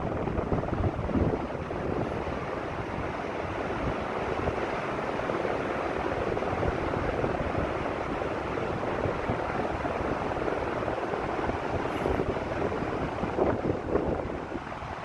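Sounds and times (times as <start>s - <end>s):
wind on microphone: 0.0s - 4.7s, 6.1s - 15.0s
ocean surf: 0.7s - 13.5s.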